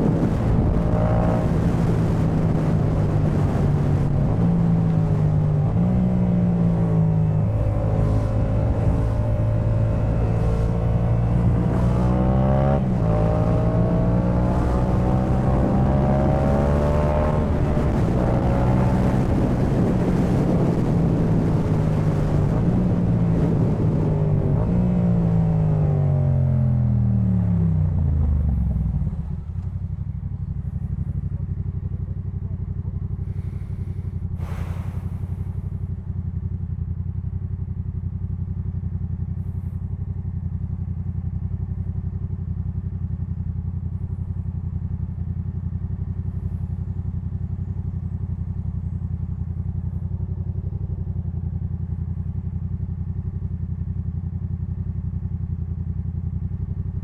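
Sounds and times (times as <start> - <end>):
motorcycle engine idling: 4.8 - 11.6, 25.6 - 57.0
brief rushing noise: 34.4 - 35.4.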